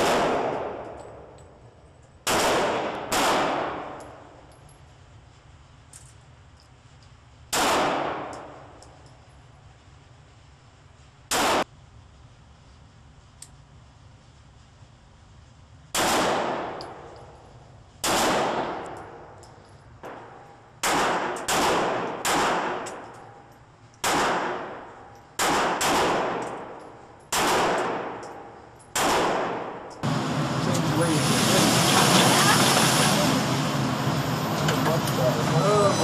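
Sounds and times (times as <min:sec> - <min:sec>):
gunshots with echoing decay: 0:00.0 - 0:01.5, 0:02.2 - 0:04.4, 0:07.5 - 0:08.8, 0:11.3 - 0:11.7, 0:15.9 - 0:17.4, 0:18.0 - 0:30.1.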